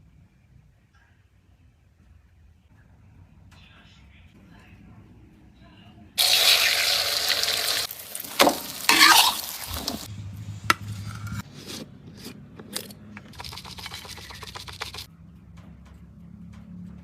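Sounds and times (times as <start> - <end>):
utensil scraping in cooking pot: 8.8 - 15.1.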